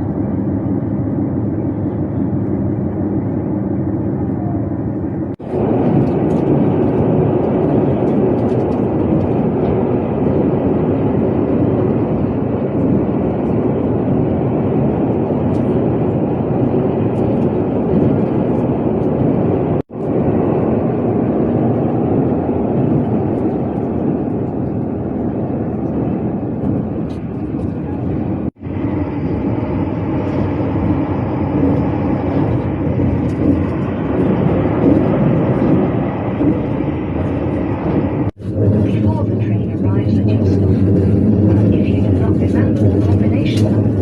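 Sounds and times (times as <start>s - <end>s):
train running noise from inside: 0.0s - 44.0s.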